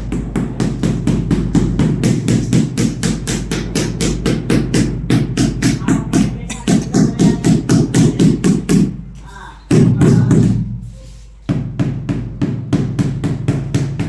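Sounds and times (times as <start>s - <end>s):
fast percussive beat: 0.0s - 9.0s.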